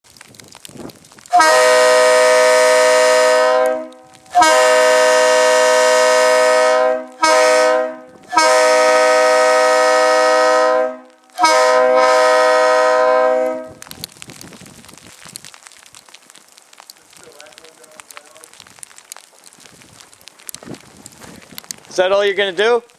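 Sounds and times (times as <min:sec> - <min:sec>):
locomotive air horn blasts: 0:01.3 - 0:13.8.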